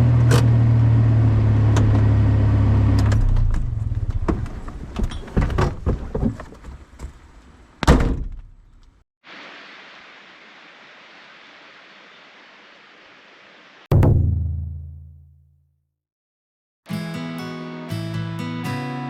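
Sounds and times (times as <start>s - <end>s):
steady even hiss: 9.3s - 13.9s.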